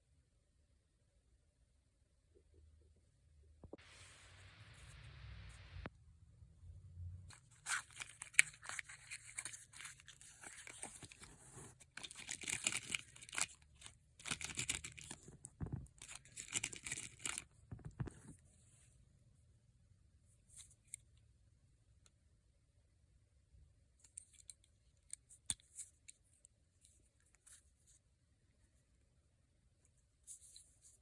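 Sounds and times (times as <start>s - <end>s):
small metallic clicks and scrapes: 7.3s - 18.4s, 24.0s - 27.7s.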